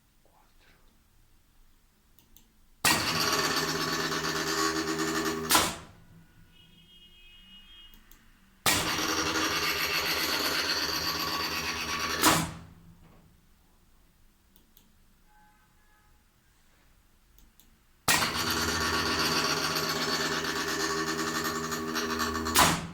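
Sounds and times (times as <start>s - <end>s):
motor whirring: 18.1s - 22.9s.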